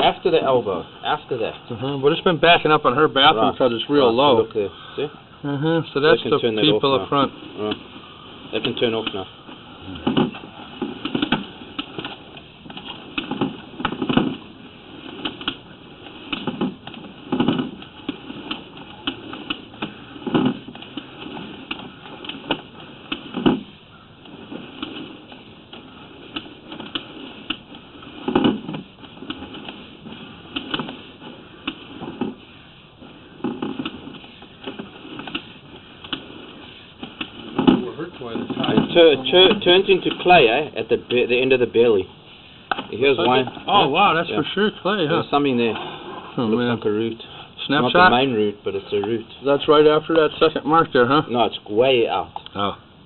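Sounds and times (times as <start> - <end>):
cable reel clicking and clacking: 10.0 - 42.0.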